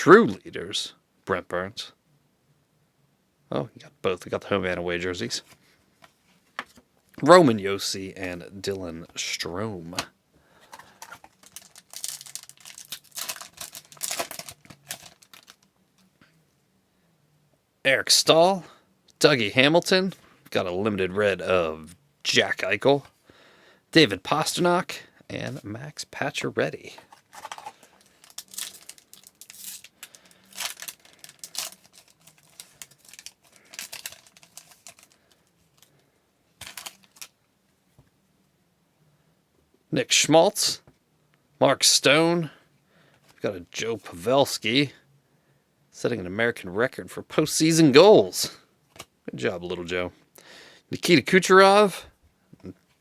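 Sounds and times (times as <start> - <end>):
foil wrapper crinkling and tearing: 10.7 - 15.7, 27.0 - 35.9, 36.6 - 37.3.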